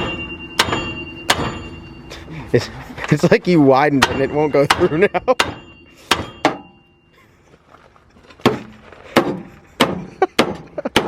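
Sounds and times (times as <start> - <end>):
hammer striking steel: 0.0 - 2.0, 3.9 - 6.9, 9.2 - 11.0.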